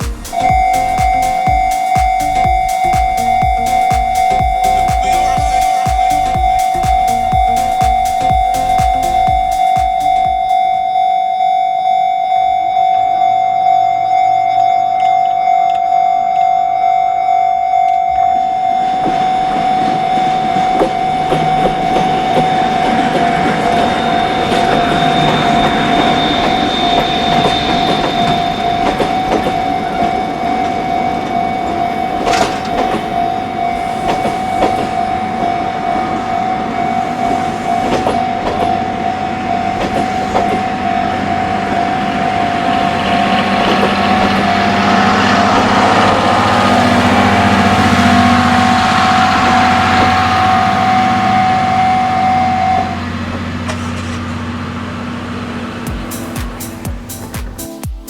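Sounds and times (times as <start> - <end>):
wheels clacking: 0.0 - 10.9, 18.7 - 58.0
level-crossing alarm: 0.0 - 54.0
train passing: 0.0 - 58.0.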